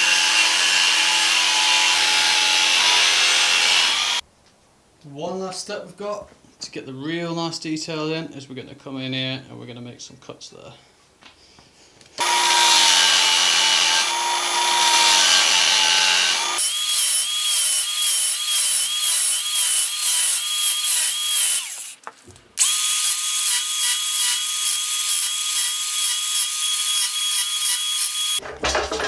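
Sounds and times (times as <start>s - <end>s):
angle grinder cutting steel: 0.0s - 4.2s, 12.2s - 22.0s, 22.6s - 28.4s.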